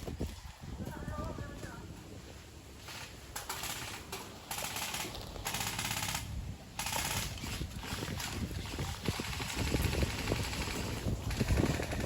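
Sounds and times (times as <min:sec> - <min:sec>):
airsoft guns firing bursts: 0:03.4 - 0:12.0.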